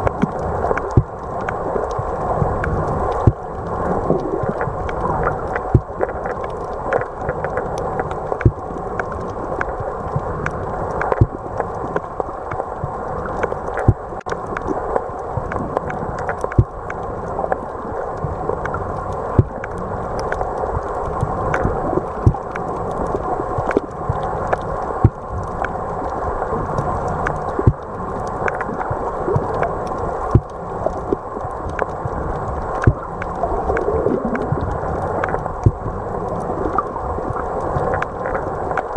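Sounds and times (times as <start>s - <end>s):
underwater low rushing: 0.0s - 38.9s.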